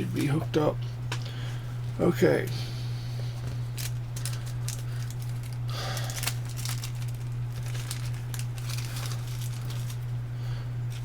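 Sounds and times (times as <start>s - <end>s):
low electrical hum: 0.0s - 11.0s
clicks and rustles of small parts: 3.8s - 10.1s.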